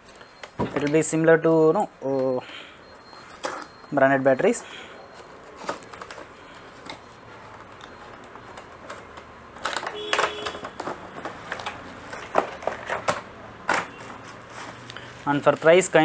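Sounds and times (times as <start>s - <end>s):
plastic parts clicking: 7.6s - 14.1s.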